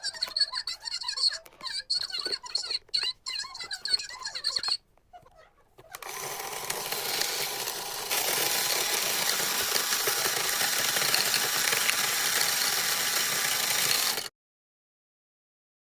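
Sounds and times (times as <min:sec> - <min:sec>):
washing machine running fast: 0:06.1 - 0:14.3.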